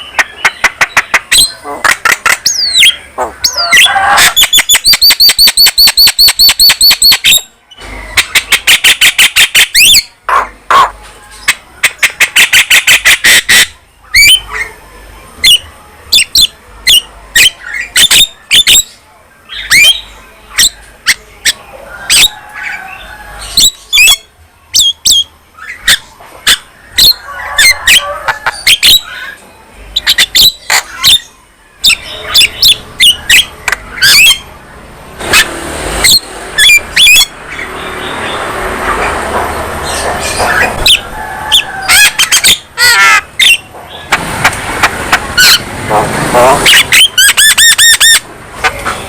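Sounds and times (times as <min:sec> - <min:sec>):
bird chattering song: 0:00.0 - 0:14.8, 0:15.4 - 0:38.7, 0:39.3 - 0:49.0
bird clicks and whistles: 0:04.3 - 0:07.4, 0:11.5 - 0:14.4
bird harsh squawks: 0:08.1 - 0:14.8, 0:15.4 - 0:29.4, 0:30.0 - 0:34.5, 0:35.2 - 0:37.8, 0:39.8 - 0:45.8, 0:46.4 - 0:49.0.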